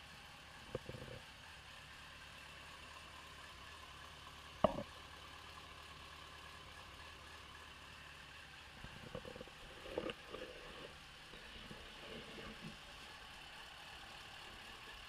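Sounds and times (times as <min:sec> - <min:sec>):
motorcycle engine idling: 0:00.0 - 0:15.0
engine knocks: 0:04.6 - 0:04.9, 0:08.8 - 0:12.9.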